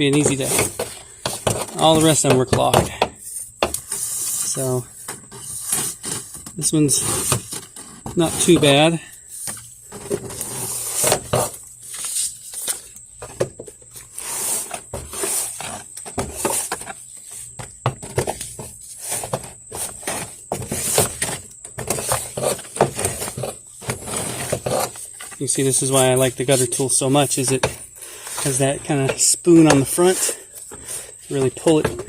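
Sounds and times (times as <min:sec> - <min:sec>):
gutter tool scraping wet leaves: 0:00.0 - 0:02.6, 0:04.0 - 0:09.0.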